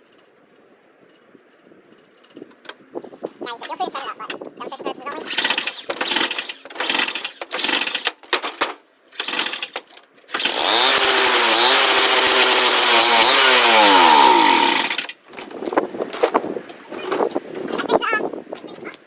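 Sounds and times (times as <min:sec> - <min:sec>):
snowblower engine running: 0:05.2 - 0:08.0, 0:09.2 - 0:15.4.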